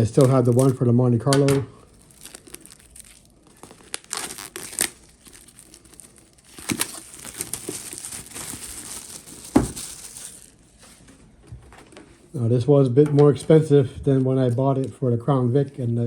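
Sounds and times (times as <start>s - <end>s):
packaging wrap rustling: 0.0s - 11.0s.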